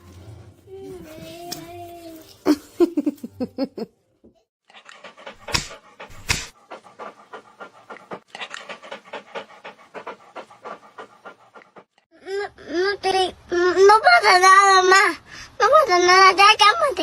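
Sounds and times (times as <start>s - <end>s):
dog panting: 4.7s - 12.1s.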